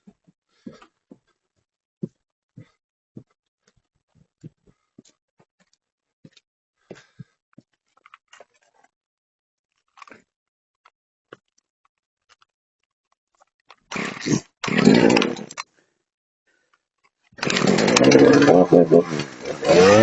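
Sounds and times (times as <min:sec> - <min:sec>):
faint crunches and clicks: 0:07.6 - 0:08.9, 0:09.7 - 0:10.3, 0:11.3 - 0:15.7
chainsaw starting and running: 0:13.9 - 0:15.6, 0:17.4 - 0:20.0.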